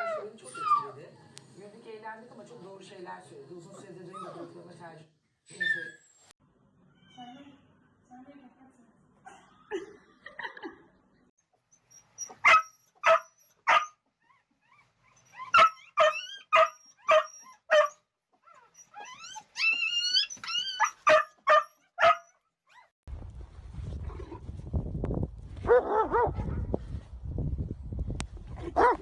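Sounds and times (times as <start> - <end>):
dog whining: 11.8 - 13.6, 14.2 - 22.9
dog yapping: 12.1 - 14.0, 15.2 - 22.9.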